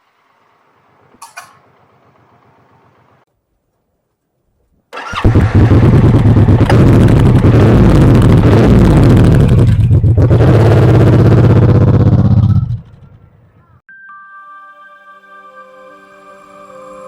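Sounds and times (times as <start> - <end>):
motorcycle engine starting and idling: 0.0 - 3.2, 4.9 - 13.8.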